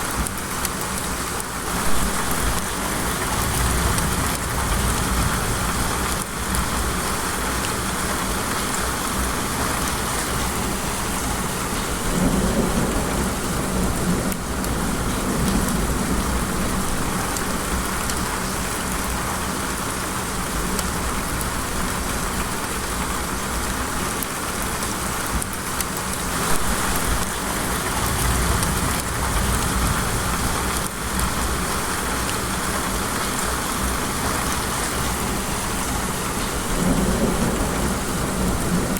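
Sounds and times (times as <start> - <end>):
rain falling: 0.0 - 38.9
thunder rumble: 1.8 - 7.0, 11.2 - 17.8, 26.4 - 31.6, 35.2 - 38.9.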